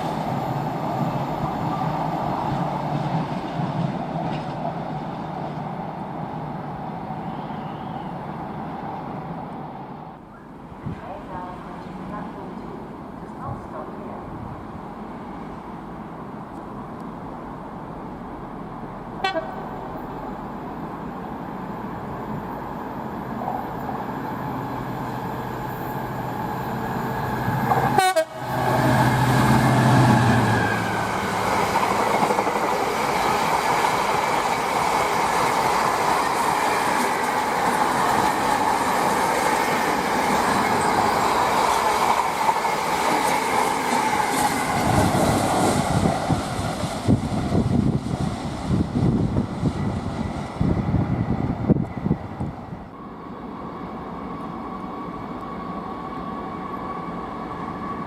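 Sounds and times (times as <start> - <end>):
freight train rumbling past: 0.0 - 58.0
train horn: 19.2 - 19.6, 27.8 - 28.6.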